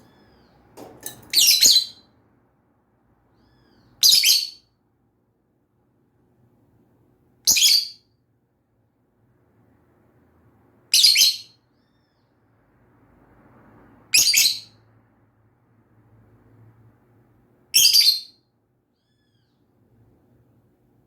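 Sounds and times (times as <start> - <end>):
lovebird chirping: 0.0 - 2.1, 3.4 - 4.7.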